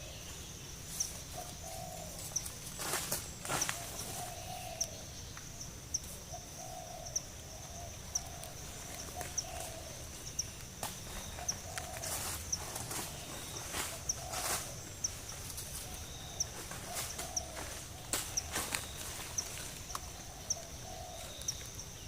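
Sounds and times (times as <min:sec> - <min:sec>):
high insect drone: 0:00.0 - 0:22.0
bird hooting: 0:01.3 - 0:02.3, 0:03.8 - 0:05.1, 0:06.3 - 0:10.4, 0:11.2 - 0:12.4, 0:15.9 - 0:19.4, 0:20.0 - 0:21.6.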